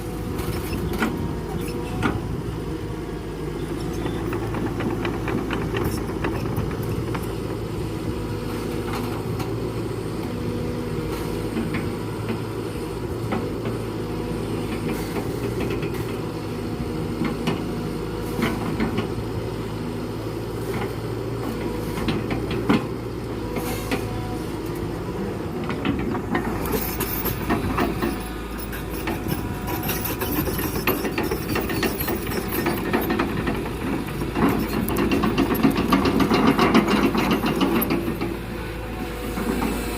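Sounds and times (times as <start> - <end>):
excavator diesel engine running: 0.0 - 39.9
knocks and clatter: 29.0 - 38.4.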